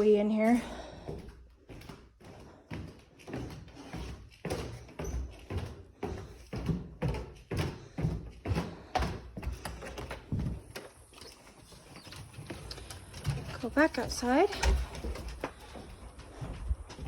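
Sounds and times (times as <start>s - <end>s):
footsteps on hard floor: 0.0s - 17.0s.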